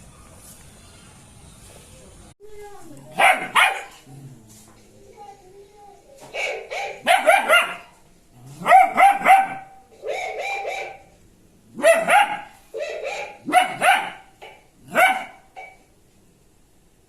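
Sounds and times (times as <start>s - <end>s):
dog barking: 3.1s - 4.0s, 6.3s - 11.1s, 11.7s - 15.7s.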